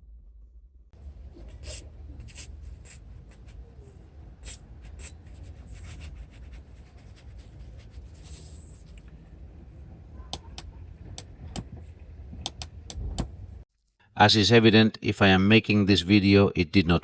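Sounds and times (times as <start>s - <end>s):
low steady hum: 0.0s - 13.7s
scratchy rubbing: 1.1s - 9.0s.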